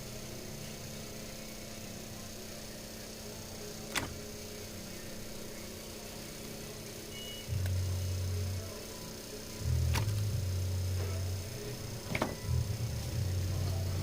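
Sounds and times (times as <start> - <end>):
electrical hum: 0.0 - 14.0
sharp click: 3.9 - 4.2, 9.9 - 10.3.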